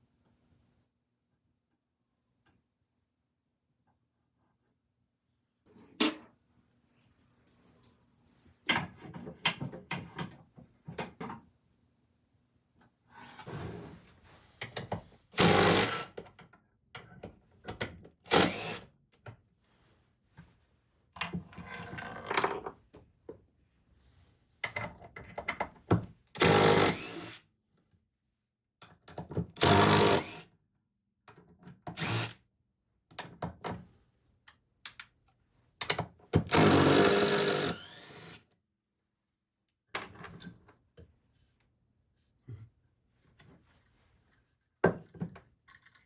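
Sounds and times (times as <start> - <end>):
power drill running in bursts: 15.4 - 16.0, 18.3 - 18.8, 26.4 - 27.4, 29.6 - 30.4, 32.0 - 32.3, 36.5 - 38.4.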